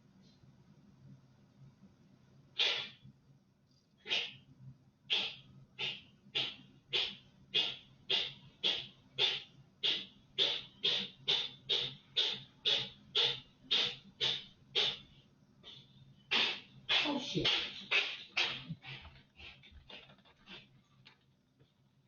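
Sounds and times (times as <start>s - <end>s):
small pet sneezing: 2.6s - 3.0s.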